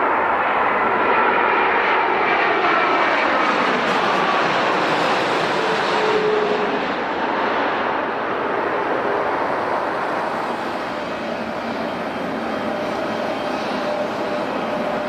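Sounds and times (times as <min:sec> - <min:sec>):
jet airliner engine noise: 0:00.0 - 0:15.0.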